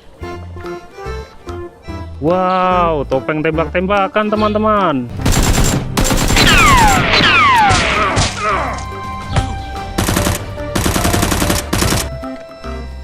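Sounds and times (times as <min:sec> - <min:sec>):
faint background music: 0:00.0 - 0:13.0
machine-gun fire: 0:05.2 - 0:08.6, 0:10.0 - 0:12.1.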